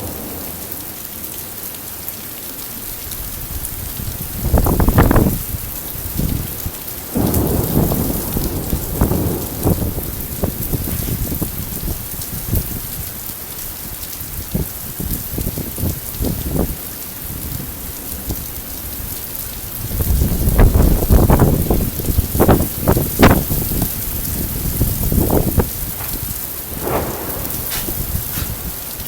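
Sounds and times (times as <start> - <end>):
thunder rumble: 0.0 - 1.4, 3.2 - 12.9, 19.9 - 29.0
heavy rain hissing: 0.0 - 29.0
raindrop knocks: 22.4 - 29.0.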